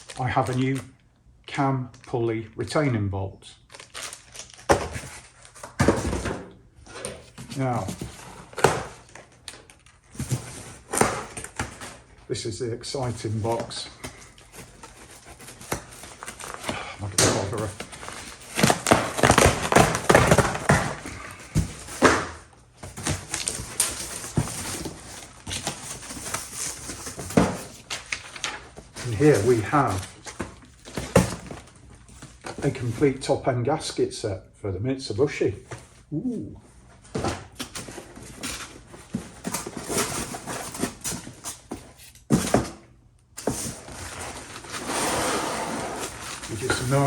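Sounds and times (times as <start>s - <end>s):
cardboard tearing and rustling: 3.7s - 6.4s, 7.0s - 12.2s, 13.4s - 32.7s, 37.2s - 47.0s
box thumps: 5.7s - 6.5s, 7.4s - 9.2s, 15.6s - 26.3s.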